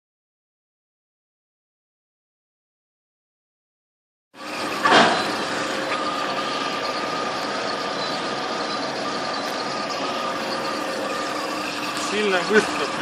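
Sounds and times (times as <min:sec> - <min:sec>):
machine motor whining: 0:04.4 - 0:13.0.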